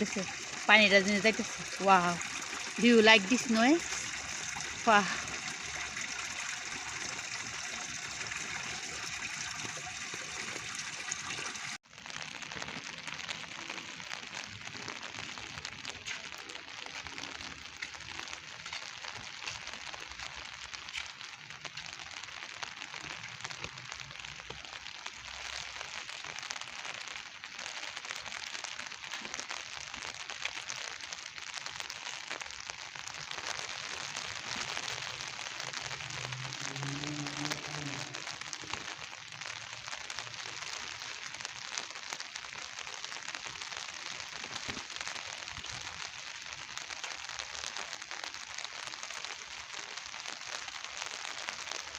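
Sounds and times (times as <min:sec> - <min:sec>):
steady rain: 0:00.0 - 0:51.9.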